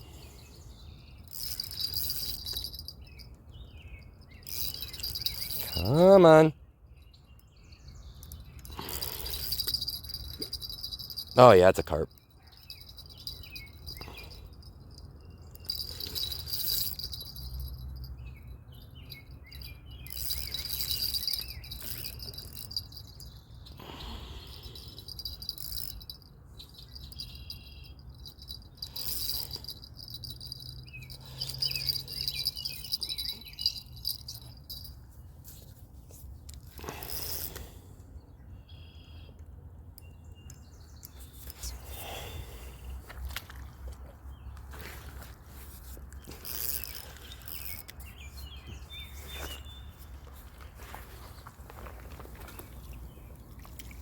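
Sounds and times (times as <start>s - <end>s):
birds chirping: 0.0s - 35.5s, 36.4s - 54.0s.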